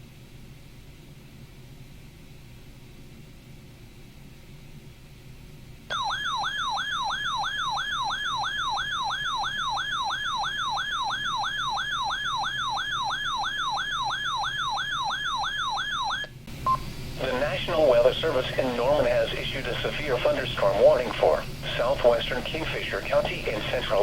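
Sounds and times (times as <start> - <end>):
warbling alert siren: 5.9 - 16.3.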